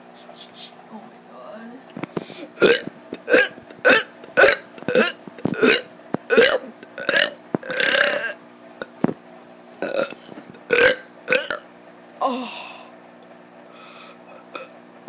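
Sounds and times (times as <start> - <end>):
child burping: 2.6 - 8.4, 9.8 - 11.6.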